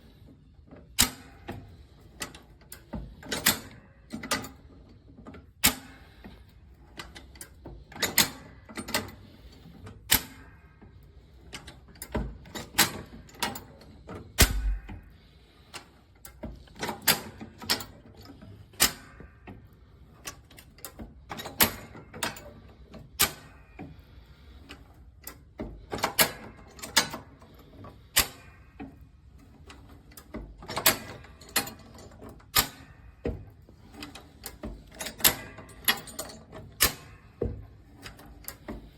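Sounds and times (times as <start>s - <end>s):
metal jack clacking and knocking: 14.3s - 15.0s, 30.2s - 38.9s
heavy low thump: 14.4s - 15.0s.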